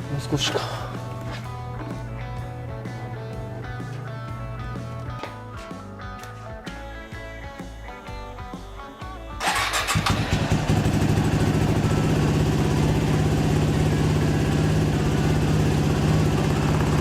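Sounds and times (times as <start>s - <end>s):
background music: 0.0s - 10.8s
motorcycle engine starting and idling: 9.4s - 17.0s.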